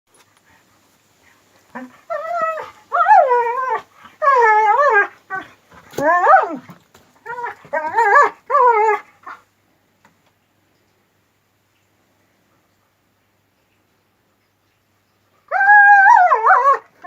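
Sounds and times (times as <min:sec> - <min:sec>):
dog whining and squealing: 0:01.8 - 0:09.4.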